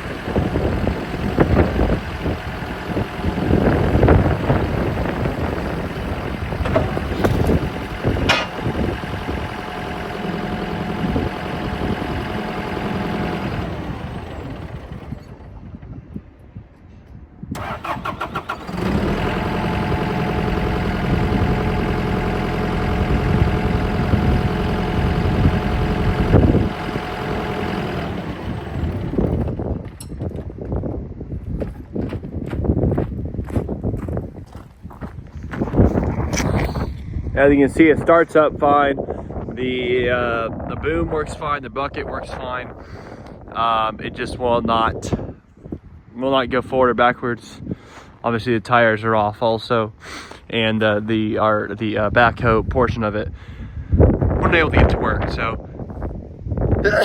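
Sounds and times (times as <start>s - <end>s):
starter cranking: 0.0s - 15.5s, 17.6s - 22.2s
diesel engine running: 0.0s - 15.8s, 17.5s - 30.0s, 37.8s - 45.3s.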